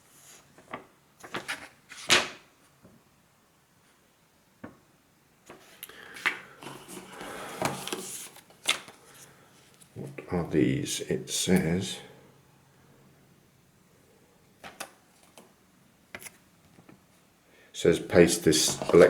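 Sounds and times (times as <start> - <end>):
rustling of packaging: 6.6 - 9.9.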